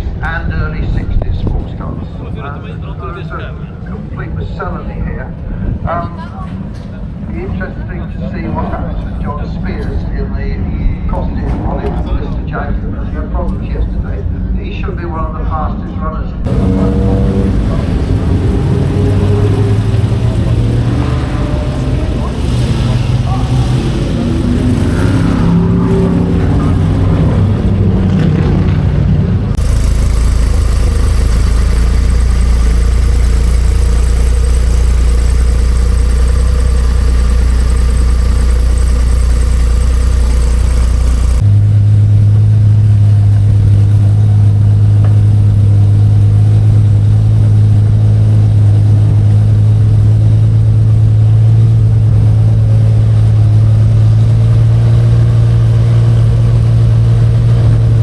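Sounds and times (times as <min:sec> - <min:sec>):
racing car engines droning: 0:00.0 - 0:58.0
strong steady hum: 0:16.4 - 0:26.4, 0:29.3 - 0:58.0.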